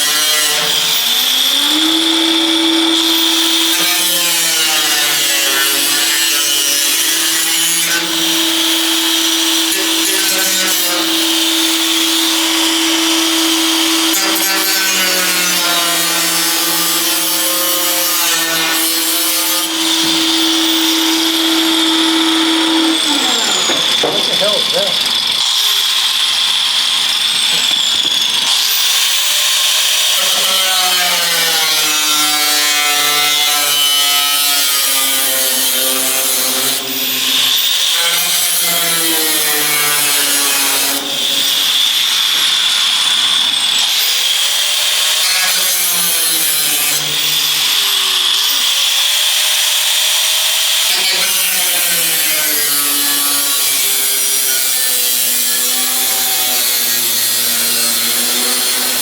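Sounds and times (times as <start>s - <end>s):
power tool cutting sheet metal: 0.0s - 59.0s.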